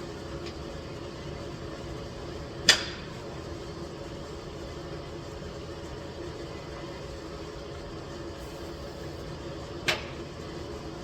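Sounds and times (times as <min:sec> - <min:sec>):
steady mechanical hum: 0:00.0 - 0:11.0.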